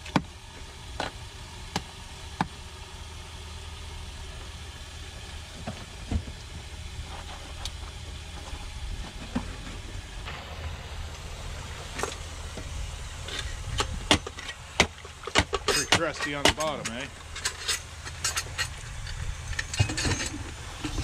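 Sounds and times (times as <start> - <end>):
engine idling: 0.0 - 21.0
sharp clicks and knocks: 11.9 - 21.0.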